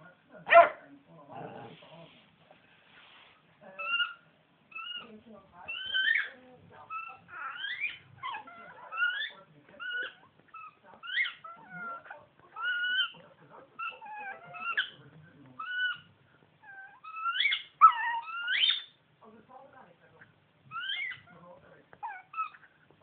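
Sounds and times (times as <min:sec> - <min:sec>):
dog whining: 0:03.8 - 0:05.1, 0:05.7 - 0:13.2, 0:13.8 - 0:15.0, 0:15.6 - 0:19.0, 0:20.7 - 0:21.3, 0:22.0 - 0:22.7.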